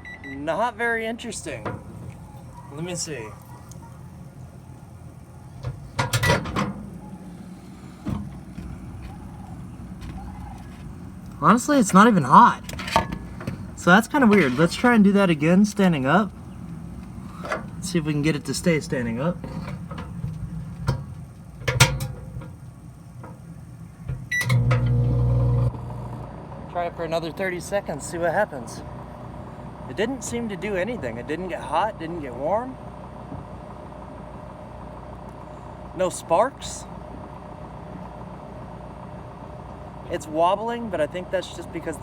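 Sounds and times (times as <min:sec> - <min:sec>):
steady low hum: 0:01.0 - 0:42.0
microwave door latch clacks: 0:05.6 - 0:11.4, 0:17.3 - 0:22.6, 0:24.0 - 0:25.5
keypad beep: 0:24.3 - 0:24.7.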